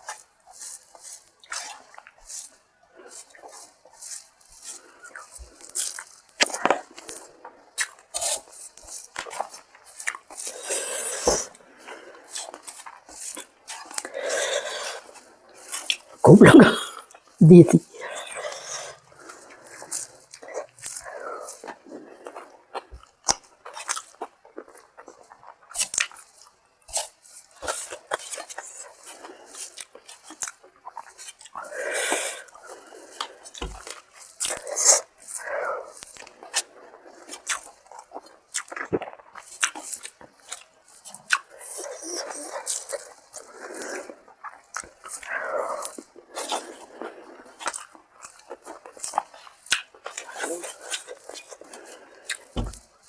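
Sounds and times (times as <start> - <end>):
chewing with wet smacking: 36.2 - 52.8.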